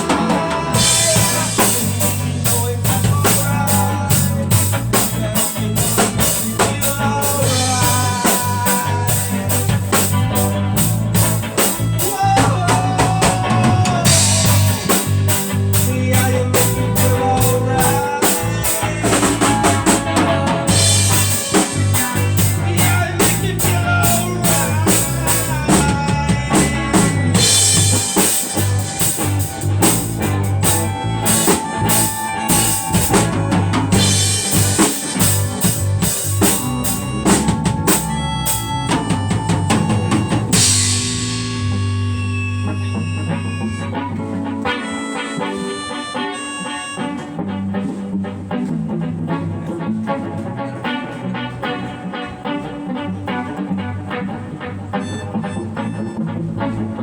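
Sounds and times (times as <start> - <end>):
drum kit beat with rimshots: 0.0 - 47.6
melody: 0.0 - 47.7
band music: 0.0 - 57.0
low bass line: 0.0 - 57.0.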